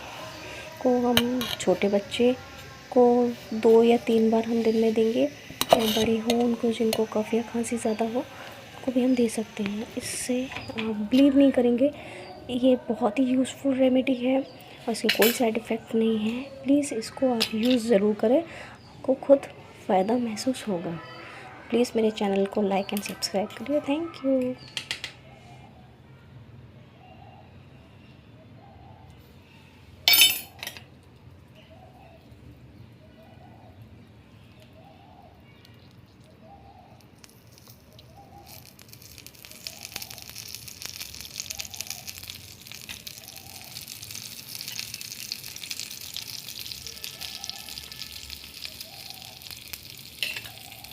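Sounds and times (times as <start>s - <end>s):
hot fat sizzling: 0.0s - 12.7s, 35.6s - 50.9s.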